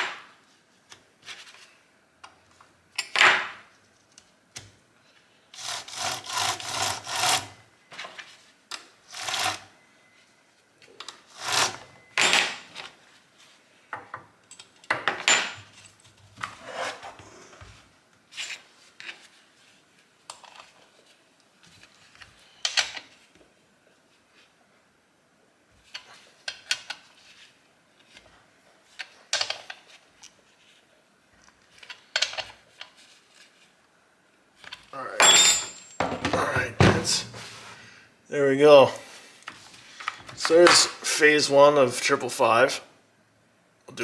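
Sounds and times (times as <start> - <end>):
hand tool rasping: 5.6 - 7.6, 9.1 - 9.7, 11.3 - 11.8.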